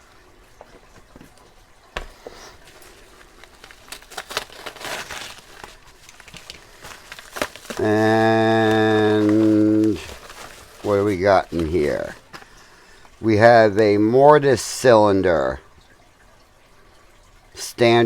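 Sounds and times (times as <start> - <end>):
plastic packaging crinkling: 2.0 - 13.2.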